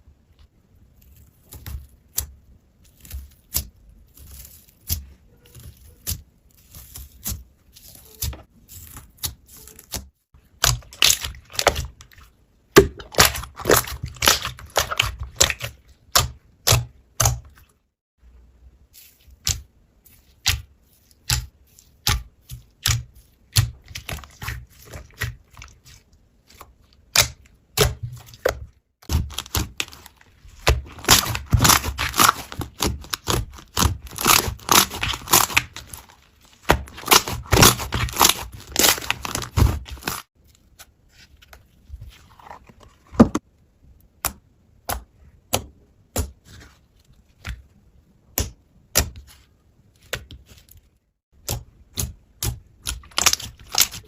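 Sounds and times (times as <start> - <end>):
slime popping and crackling: 12.8 - 17.4, 27.1 - 40.3.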